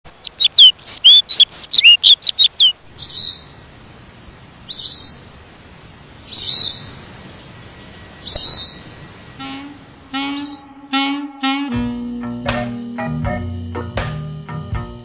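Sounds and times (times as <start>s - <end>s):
harsh bird calls: 0.1s - 10.9s
bird whistling downslurred notes: 0.2s - 3.5s, 10.2s - 10.9s.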